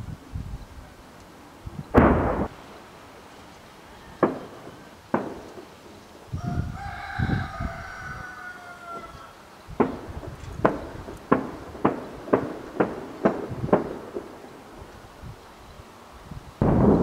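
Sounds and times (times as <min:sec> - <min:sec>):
low thuds: 0:01.9 - 0:02.8
shelling blast: 0:01.9 - 0:03.2, 0:04.1 - 0:06.0, 0:09.8 - 0:14.8, 0:16.6 - 0:17.0
sharp cracks: 0:01.9 - 0:03.4, 0:04.2 - 0:06.2, 0:09.8 - 0:15.0
rooster crowing: 0:03.6 - 0:05.3, 0:06.3 - 0:09.5.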